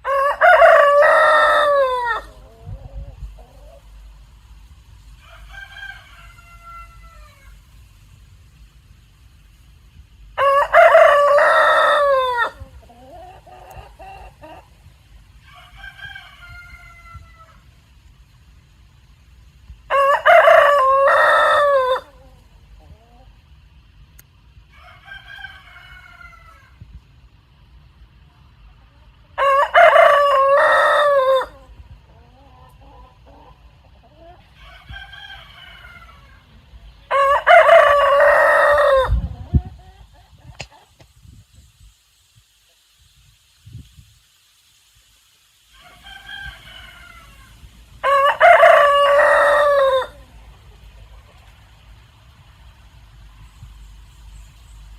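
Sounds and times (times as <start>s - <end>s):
rooster crowing: 0.0s - 2.5s, 5.2s - 7.6s, 10.4s - 12.6s, 15.4s - 17.6s, 19.9s - 22.3s, 24.7s - 26.8s, 29.4s - 31.7s, 34.5s - 36.4s, 37.1s - 39.5s, 45.7s - 50.4s.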